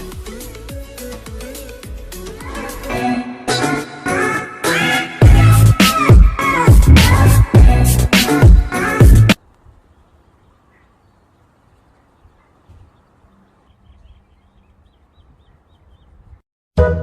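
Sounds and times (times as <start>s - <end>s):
high bird chirps: 9.8s - 16.4s.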